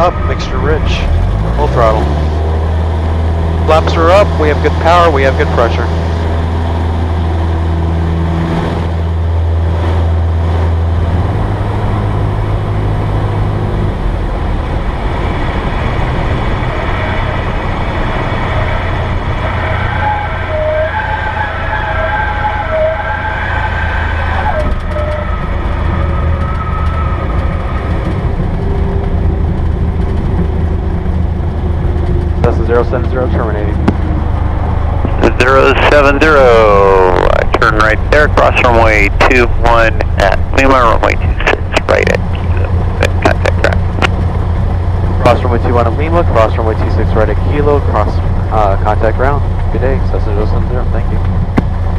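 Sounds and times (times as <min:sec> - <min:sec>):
aircraft engine and propeller: 0:00.0 - 0:19.5, 0:24.6 - 0:51.9
wavering high whine: 0:15.8 - 0:44.3.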